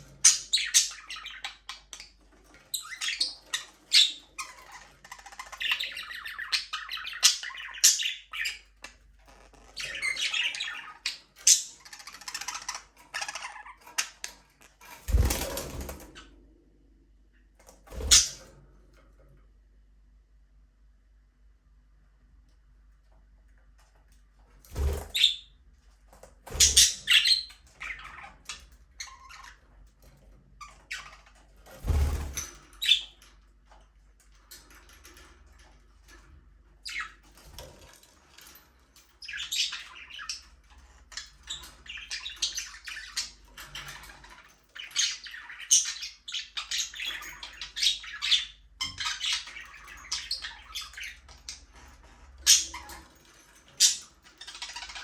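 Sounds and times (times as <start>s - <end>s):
budgerigars chirping and squawking: 0.0s - 16.0s, 17.9s - 18.5s, 24.7s - 25.5s, 26.5s - 29.8s, 30.6s - 33.3s, 36.8s - 37.8s, 38.4s - 55.0s.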